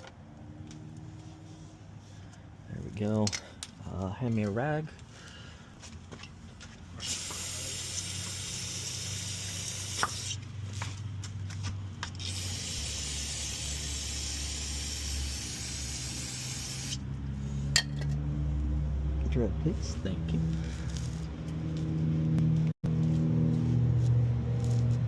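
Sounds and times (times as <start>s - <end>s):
hissing spray: 7.0s - 10.4s, 12.2s - 17.0s.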